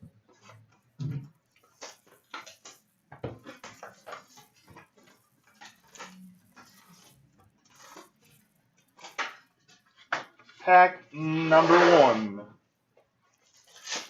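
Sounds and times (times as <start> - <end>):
shrink-wrap and cardboard crinkling: 0.3 - 10.6, 13.3 - 14.0.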